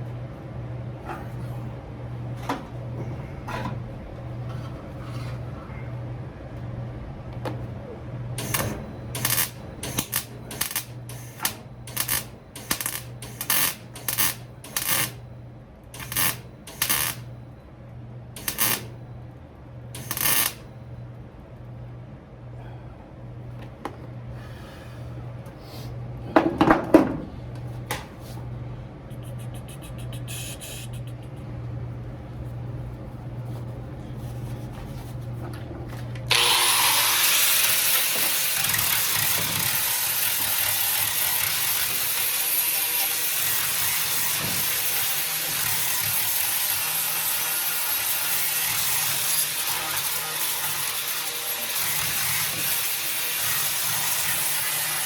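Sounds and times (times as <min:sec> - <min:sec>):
low steady hum: 0:00.0 - 0:13.2, 0:13.8 - 0:36.4
power tool running: 0:36.3 - 0:55.0.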